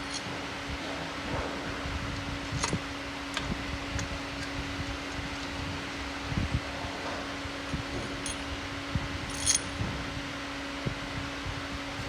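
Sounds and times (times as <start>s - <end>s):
steady mechanical hum: 0.0s - 12.0s.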